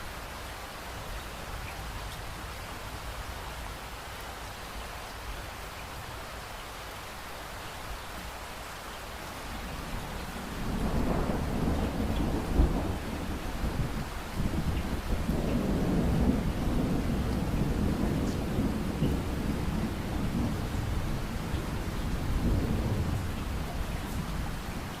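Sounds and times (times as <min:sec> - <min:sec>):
steady rain: 0:00.0 - 0:25.0
thunder rumbling: 0:09.7 - 0:25.0.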